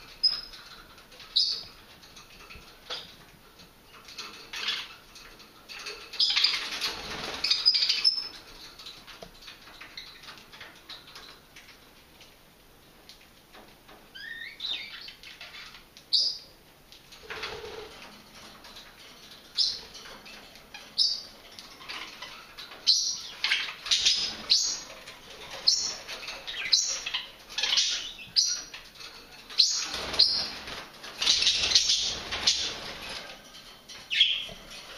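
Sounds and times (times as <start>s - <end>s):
wing fluttering: 3.9s - 11.5s, 17.1s - 34.9s
budgerigars chirping: 21.0s - 24.9s, 25.5s - 28.8s, 29.6s - 30.6s, 31.2s - 32.8s, 34.1s - 34.5s.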